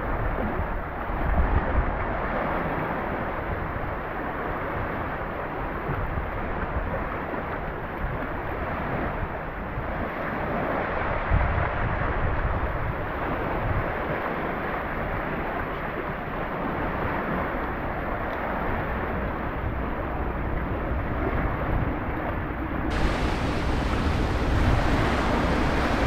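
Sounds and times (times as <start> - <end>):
wind on microphone: 0.0 - 26.0
sea waves surf: 13.1 - 26.0.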